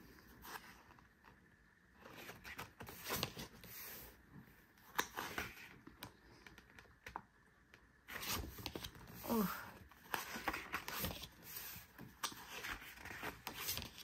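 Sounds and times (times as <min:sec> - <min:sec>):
paper rustling: 0:08.1 - 0:14.0.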